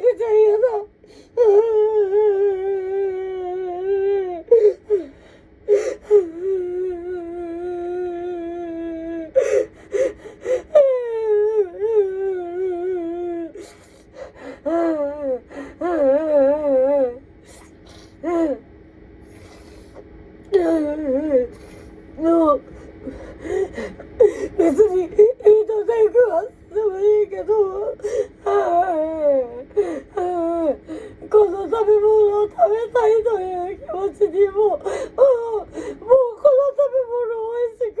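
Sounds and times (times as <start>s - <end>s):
woman wailing and sobbing: 0.0s - 17.2s, 18.2s - 18.6s, 20.5s - 38.0s
sharp gasping breaths: 19.2s - 20.0s.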